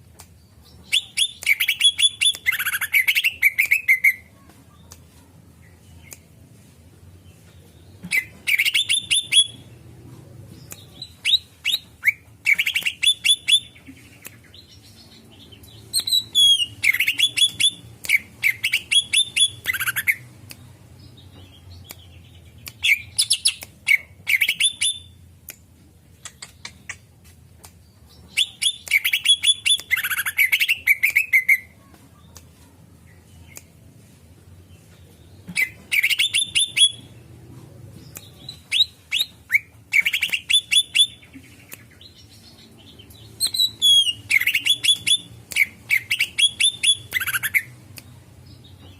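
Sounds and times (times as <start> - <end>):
bird chirping and whistling: 0.8 - 4.2, 8.1 - 9.7, 10.8 - 13.8, 15.9 - 20.2, 22.8 - 25.1, 35.6 - 37.1, 38.5 - 41.4, 43.4 - 47.7.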